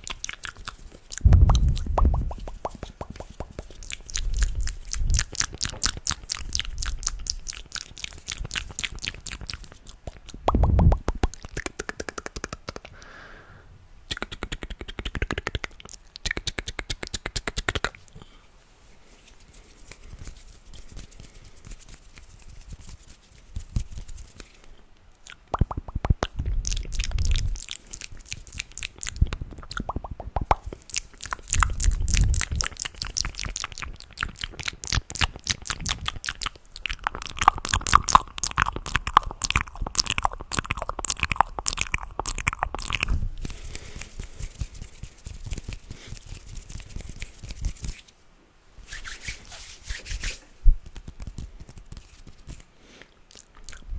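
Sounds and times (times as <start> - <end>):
wet mouth clicks and pops: 0.0 - 13.0, 14.1 - 18.2, 25.2 - 44.7, 50.8 - 53.9.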